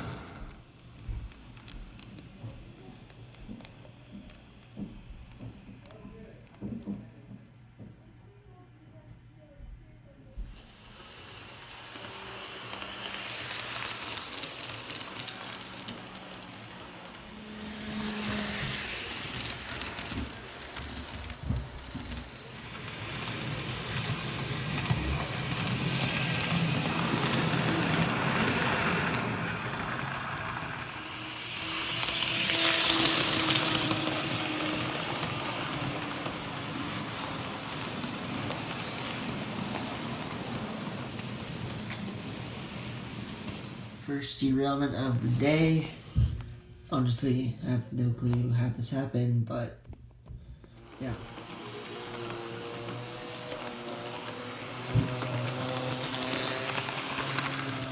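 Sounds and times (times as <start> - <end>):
model train wheels on rail: 0.0 - 8.0, 10.3 - 49.7, 50.3 - 57.9
locomotive motor: 10.6 - 46.6, 50.6 - 57.9.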